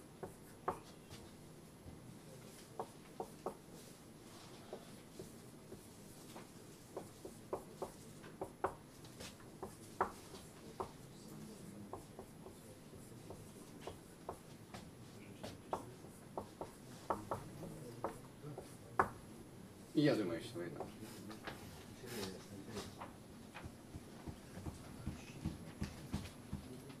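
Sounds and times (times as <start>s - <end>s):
handwriting taps on a board: 0.2s - 1.2s, 1.8s - 3.8s, 4.6s - 11.0s, 11.8s - 19.2s, 23.0s - 27.0s.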